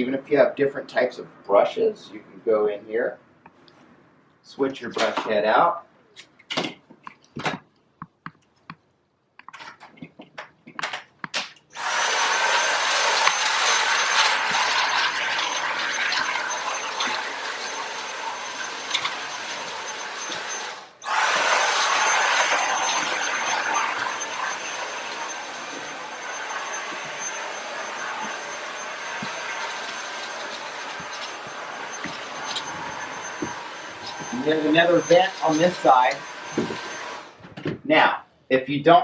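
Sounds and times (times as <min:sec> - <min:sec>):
vacuum cleaner whining: 0:11.8 - 0:37.5.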